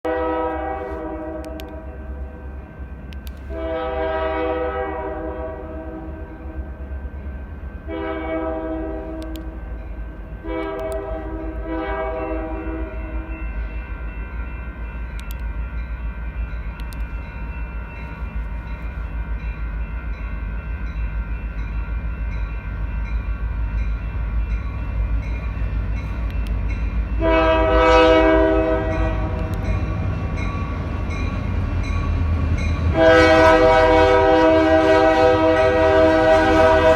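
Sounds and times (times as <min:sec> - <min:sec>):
locomotive air horn blasts: 0:00.0 - 0:02.4, 0:03.5 - 0:06.3, 0:07.9 - 0:09.4, 0:10.4 - 0:13.3, 0:27.2 - 0:29.7, 0:32.9 - 0:36.9
locomotive rumble: 0:00.1 - 0:36.9.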